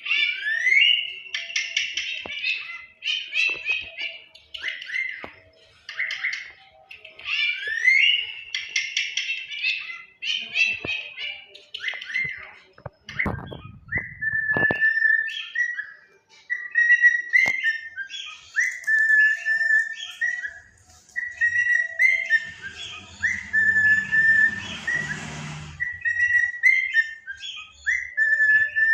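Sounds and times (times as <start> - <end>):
parrot chirping: 0.0 - 28.9
parrot whistling short note: 21.5 - 26.8.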